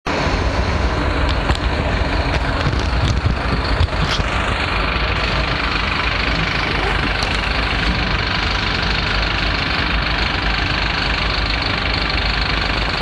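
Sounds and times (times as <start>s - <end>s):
low engine rumble: 0.1s - 13.0s
small rattles and clicks: 2.3s - 4.4s.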